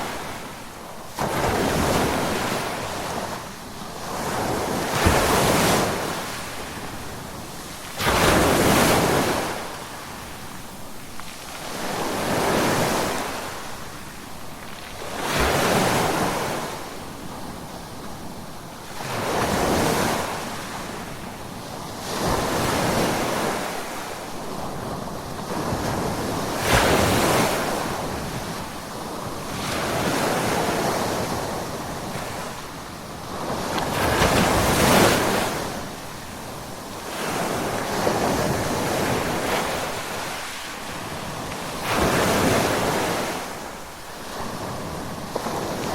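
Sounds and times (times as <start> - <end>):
ocean waves breaking: 22.0 - 45.9.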